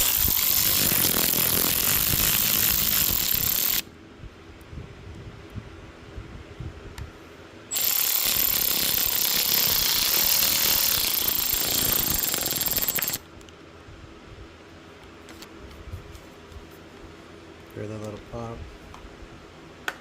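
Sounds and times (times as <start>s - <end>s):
electric ratchet whining: 0.0s - 3.9s, 7.7s - 13.2s.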